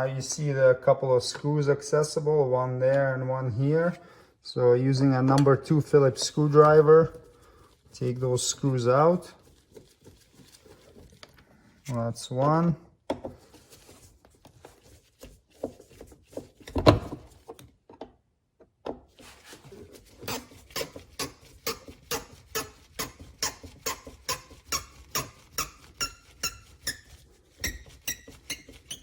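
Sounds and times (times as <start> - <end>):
screw squeaking and clicking: 20.2 - 29.0.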